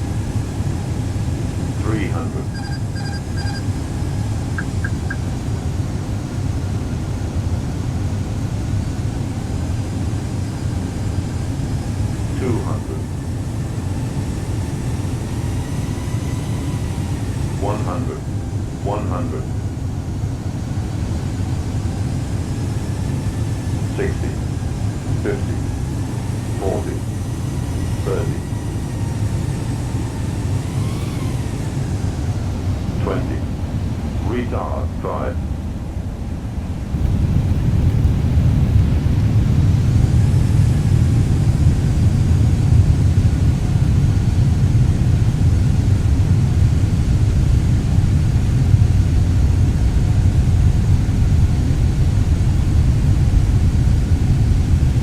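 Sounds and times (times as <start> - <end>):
airliner cabin rumble: 0.0 - 55.0
faint short beeps: 2.5 - 3.7, 4.6 - 5.2.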